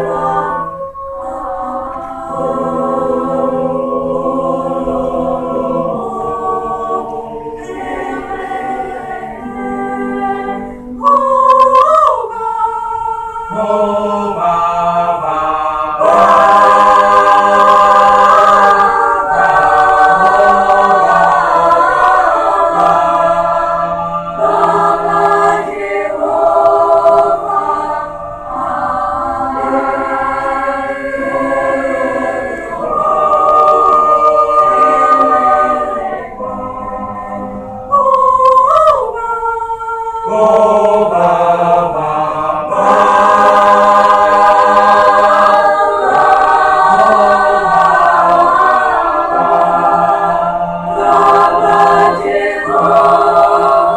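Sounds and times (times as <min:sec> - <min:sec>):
choir singing: 0:00.0 - 0:53.9.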